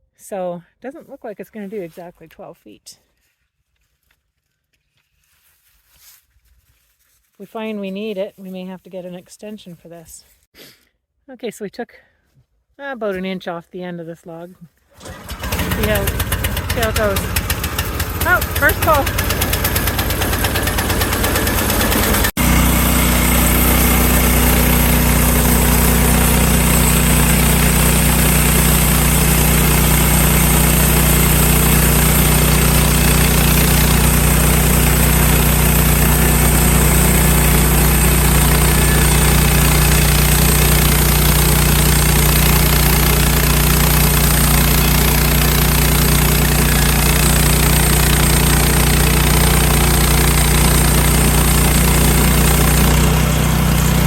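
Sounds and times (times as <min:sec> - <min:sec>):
small engine running: 0:14.9 - 0:54.0.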